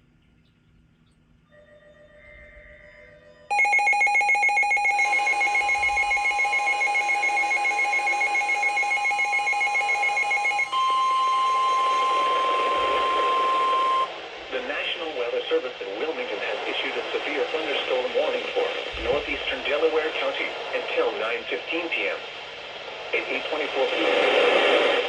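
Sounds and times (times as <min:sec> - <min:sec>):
rapid pulsing electronic beeps: 0:02.3 - 0:22.3
steady warning alert tone: 0:02.8 - 0:16.2.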